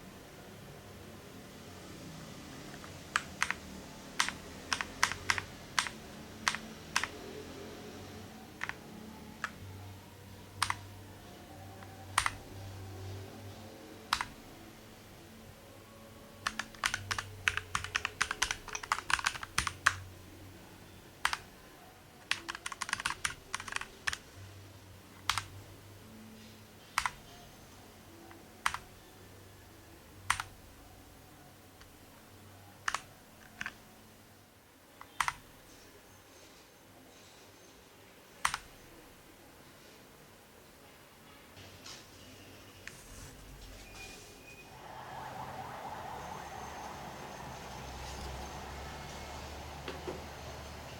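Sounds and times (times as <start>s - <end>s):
mechanical keyboard typing: 2.7s - 7.3s, 8.5s - 9.6s, 10.5s - 10.9s, 11.8s - 12.5s, 14.1s - 14.4s, 16.4s - 20.1s, 21.2s - 21.5s, 22.2s - 24.2s, 25.2s - 25.6s, 26.9s - 27.4s, 28.6s - 28.9s, 30.3s - 30.6s, 32.8s - 33.8s, 35.0s - 35.5s, 38.4s - 38.8s.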